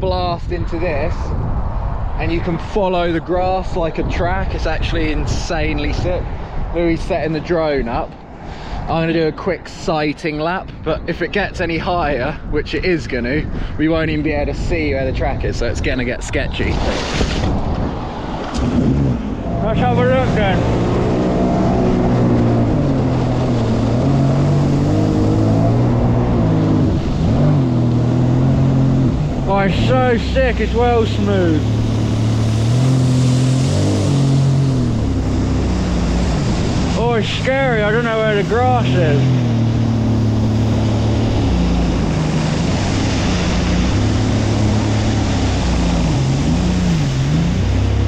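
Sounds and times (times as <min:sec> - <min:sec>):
water rushing: 0:16.5 - 0:48.0
jet ski engine running: 0:18.4 - 0:48.0.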